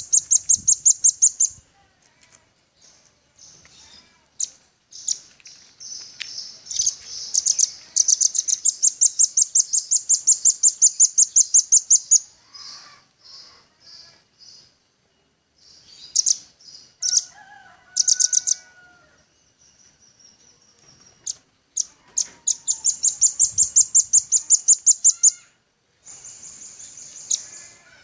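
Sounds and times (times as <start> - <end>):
bird calling with sharp chips: 2.8 - 14.6, 18.0 - 18.7, 20.8 - 27.8.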